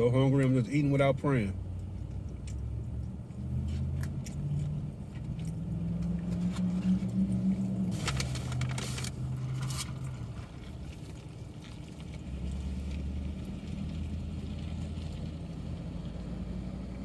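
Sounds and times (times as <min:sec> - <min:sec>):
rustle: 0:06.0 - 0:15.4.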